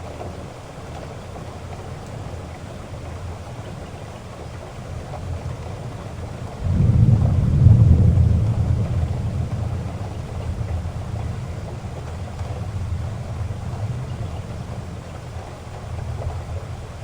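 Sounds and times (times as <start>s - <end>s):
heavy rain falling: 0.0s - 17.0s
thunder rumble: 4.8s - 17.0s.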